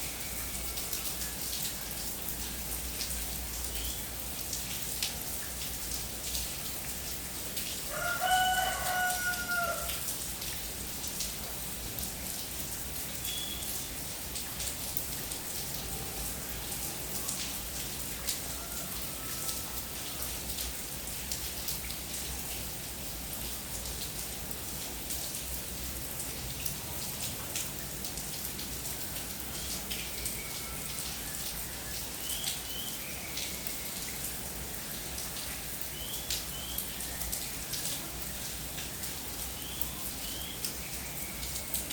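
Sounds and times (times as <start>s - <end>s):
rain drops hitting surfaces: 0.0s - 41.9s
rooster crowing: 7.9s - 10.0s, 18.4s - 19.8s
faint bird chirps: 13.2s - 13.7s.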